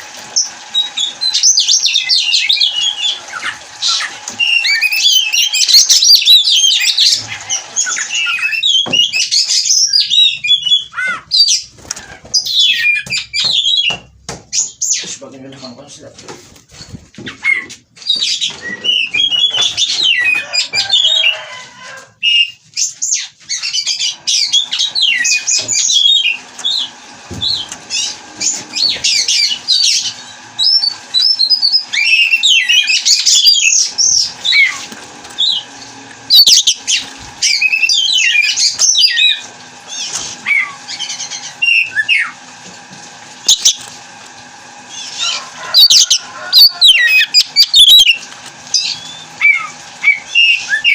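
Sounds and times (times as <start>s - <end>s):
bird singing varied song: 12.4s - 15.8s, 22.3s - 34.8s, 35.4s - 42.3s, 44.9s - 48.2s.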